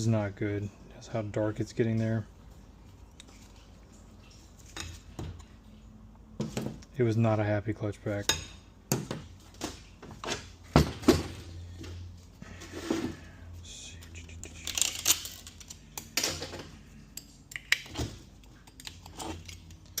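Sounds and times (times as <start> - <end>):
steady low hum: 0.0 - 20.0
parts scraping and sliding: 11.8 - 17.3
metal parts clinking: 14.5 - 16.6.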